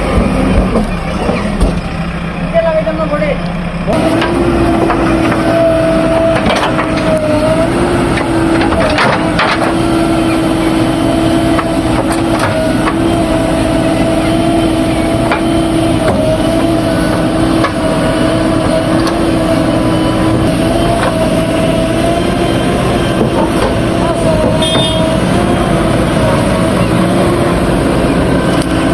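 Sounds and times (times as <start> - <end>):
mud knocking and clattering: 0.0 - 2.0, 3.9 - 13.2, 14.4 - 21.4, 23.0 - 25.5
backhoe engine running with whine: 0.0 - 28.9.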